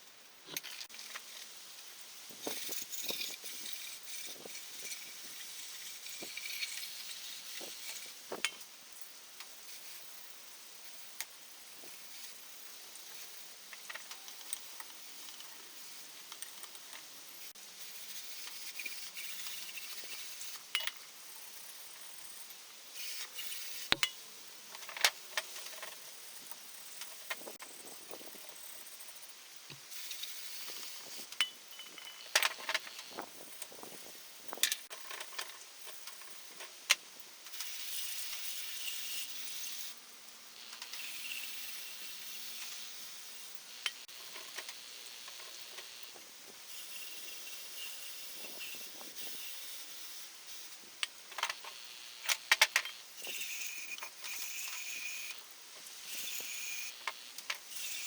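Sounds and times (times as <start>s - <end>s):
steady hiss: 0.0s - 58.0s
thin high whine: 51.7s - 57.1s.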